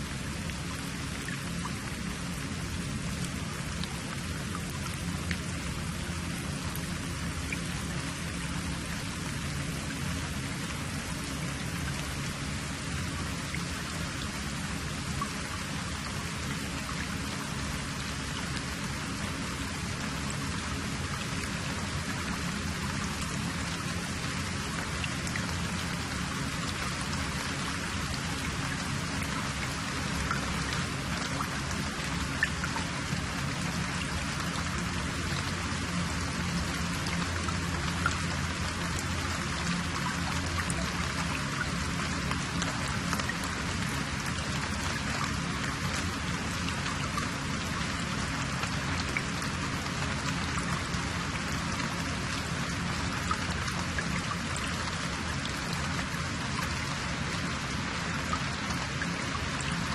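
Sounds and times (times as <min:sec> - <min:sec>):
faint ticks: 0:03.2 - 0:05.5.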